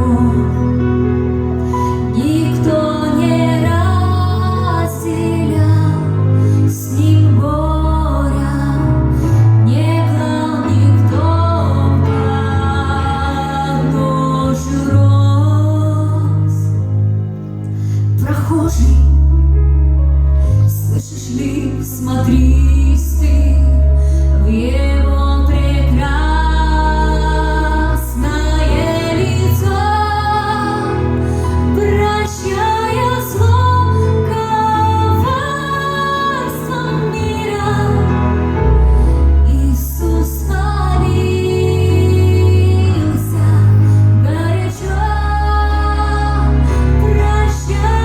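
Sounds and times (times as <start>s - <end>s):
bass and chordal accompaniment: 0.0s - 48.0s
woman singing slow melody: 20.6s - 38.6s, 39.3s - 48.0s.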